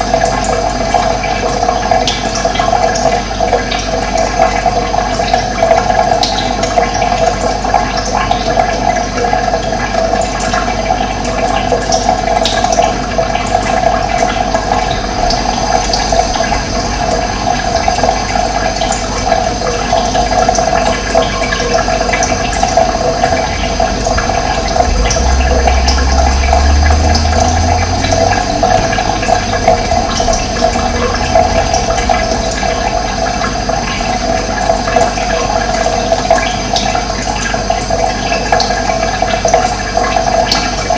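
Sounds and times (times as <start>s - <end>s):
water rushing: 0.0s - 40.9s
low rumble: 13.8s - 21.1s, 21.9s - 35.9s.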